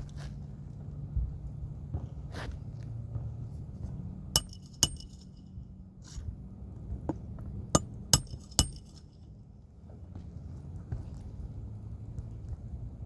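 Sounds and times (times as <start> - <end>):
hard objects clinking: 4.4 - 5.2, 7.8 - 9.0.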